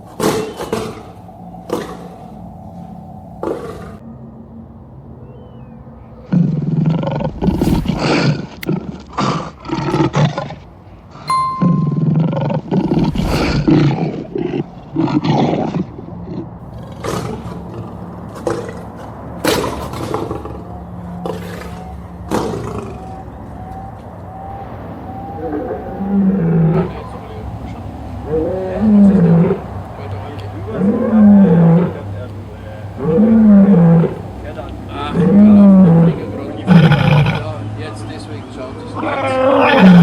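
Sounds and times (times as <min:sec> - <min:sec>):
lion roaring: 0:12.8 - 0:23.8, 0:24.9 - 0:27.2, 0:30.7 - 0:32.0, 0:32.9 - 0:34.3, 0:34.9 - 0:37.4, 0:38.9 - 0:40.0
lion grunting: 0:32.8 - 0:37.5.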